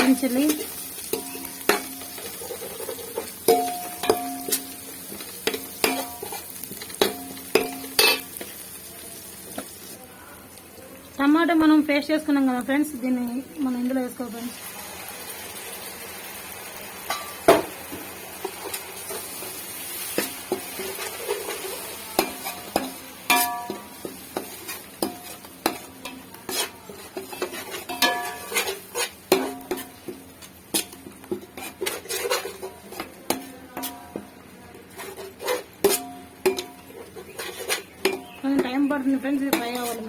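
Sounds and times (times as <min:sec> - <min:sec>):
light sizzle: 0:00.0 - 0:40.0
spoon clinking on metal pot: 0:00.5 - 0:02.4, 0:03.2 - 0:08.5, 0:22.2 - 0:29.9, 0:35.8 - 0:36.9, 0:37.7 - 0:40.0.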